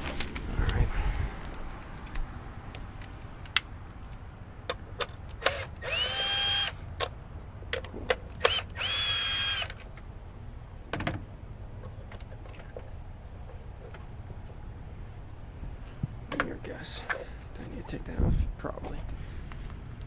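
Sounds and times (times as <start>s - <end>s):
power drill whining: 5.4s - 6.8s, 8.4s - 9.8s.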